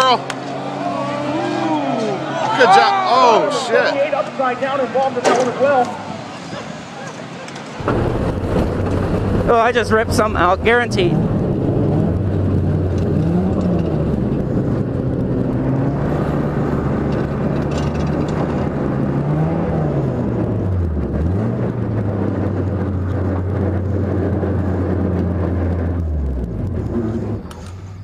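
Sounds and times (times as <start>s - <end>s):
race car engine running: 7.8s - 28.0s.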